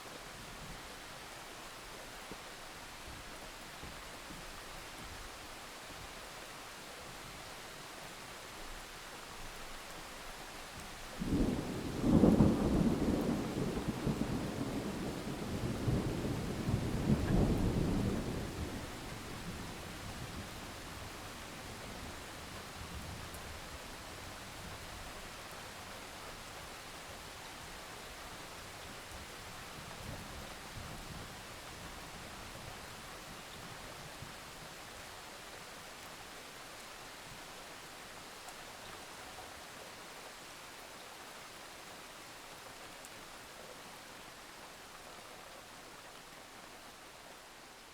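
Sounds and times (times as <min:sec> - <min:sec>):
steady rain: 0:00.0 - 0:47.9
thunderclap with rolling rumble: 0:11.2 - 0:20.6.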